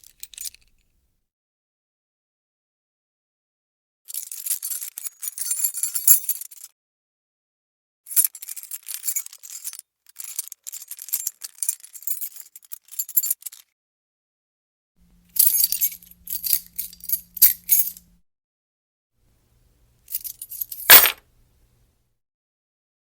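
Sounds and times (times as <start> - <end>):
keys jangling: 0.0 - 0.8, 15.1 - 18.2, 20.1 - 21.2.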